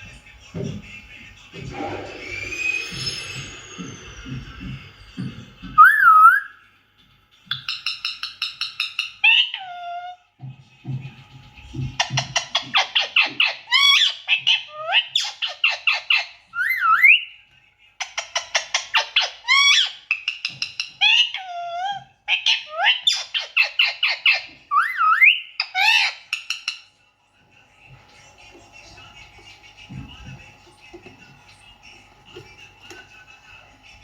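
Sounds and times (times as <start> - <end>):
parrot chirping and squawking: 1.7 - 4.9, 5.7 - 6.6, 7.5 - 10.2, 12.0 - 17.3, 18.0 - 26.9.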